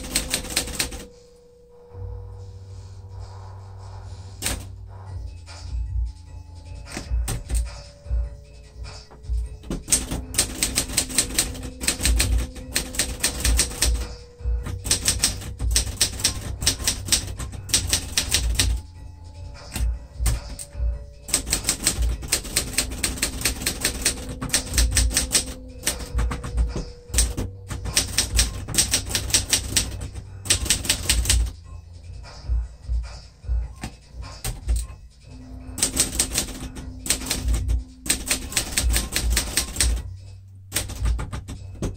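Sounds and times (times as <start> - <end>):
typewriter key strikes: 0.0 - 1.1, 9.6 - 14.1, 14.7 - 18.8, 21.3 - 31.5, 35.8 - 40.0, 40.7 - 41.9.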